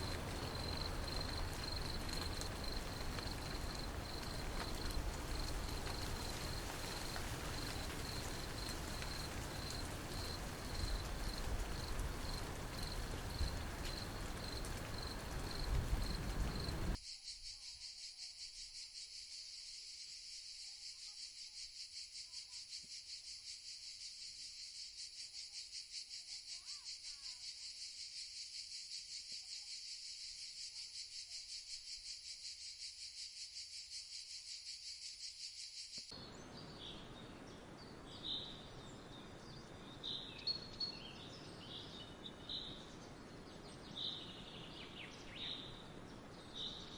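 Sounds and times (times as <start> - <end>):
outdoor ambience: 0.0 - 18.8, 35.8 - 46.9
insects trilling: 0.0 - 36.3.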